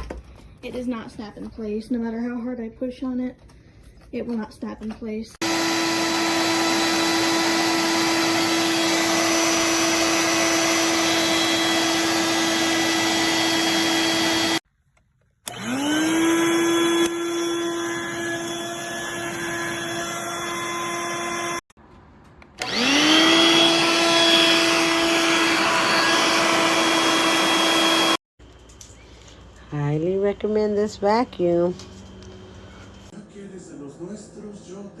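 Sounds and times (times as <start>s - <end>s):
vacuum cleaner motor running: 5.4s - 14.6s, 15.5s - 21.6s, 22.6s - 28.2s.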